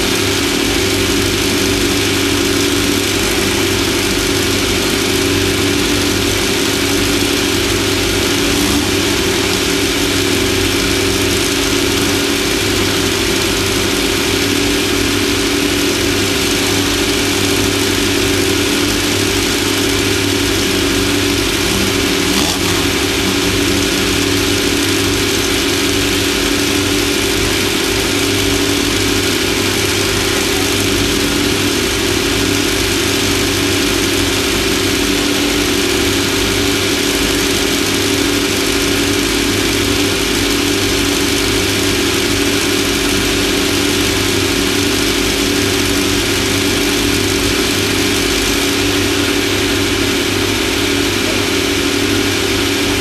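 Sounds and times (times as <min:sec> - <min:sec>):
engine running hard: 0:00.0 - 0:53.0
terrain noise: 0:03.2 - 0:31.7.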